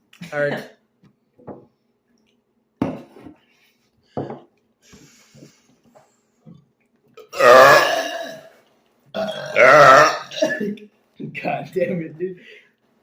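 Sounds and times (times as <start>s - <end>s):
man belching: 7.2s - 8.5s, 9.2s - 10.6s.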